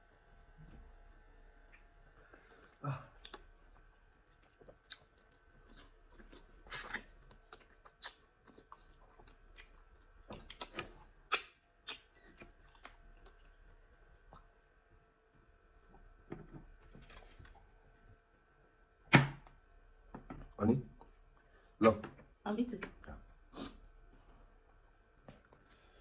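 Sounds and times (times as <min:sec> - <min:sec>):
soft chewing and mouth clicks: 0:00.6 - 0:18.2, 0:19.5 - 0:26.0
mouth smacks: 0:10.5 - 0:12.1.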